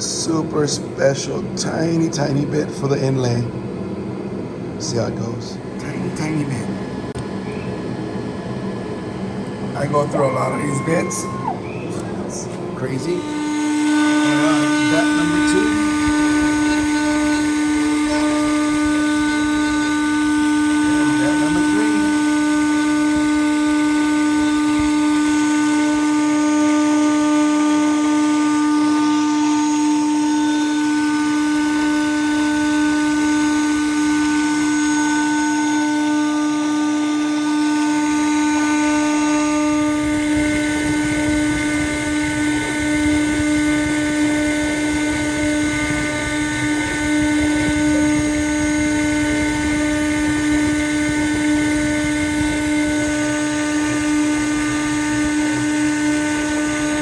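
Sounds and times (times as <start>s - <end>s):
router spindle high whine: 0.0s - 57.0s
rough low cutting noise: 11.4s - 24.6s.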